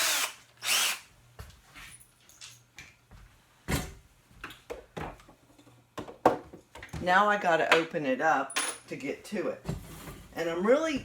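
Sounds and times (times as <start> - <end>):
power drill whine: 0.0 - 1.0.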